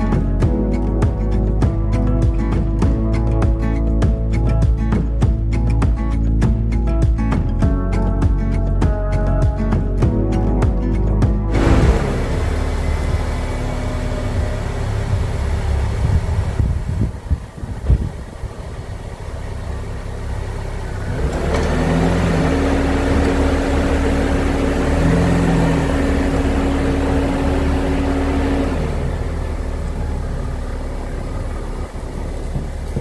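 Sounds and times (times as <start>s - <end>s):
snow blower engine running: 11.5s - 17.5s, 18.2s - 33.0s.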